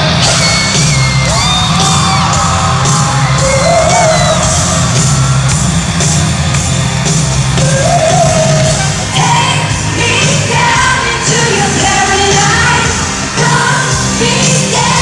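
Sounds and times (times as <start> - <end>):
crowd whooping: 0.0 - 11.0
live rock band playing: 0.0 - 15.0
loud electric guitar: 0.0 - 15.0
steady drums: 0.0 - 15.0.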